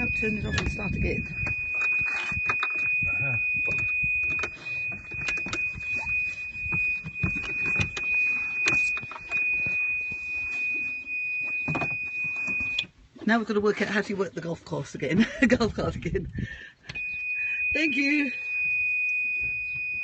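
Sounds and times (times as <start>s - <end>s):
reverse warning buzzer: 0.0s - 10.6s.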